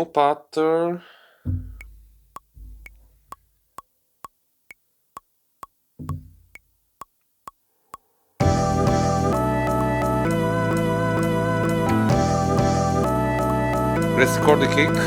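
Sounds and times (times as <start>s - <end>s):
metronome ticking: 1.5s - 7.6s, 8.4s - 15.0s
deep bass notes: 8.4s - 15.0s
house music track: 8.4s - 15.0s.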